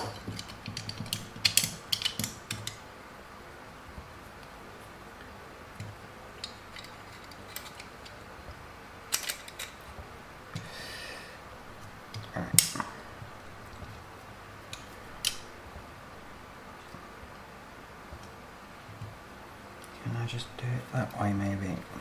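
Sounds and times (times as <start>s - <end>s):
clicks and knocks of hand tools: 0.0s - 2.8s.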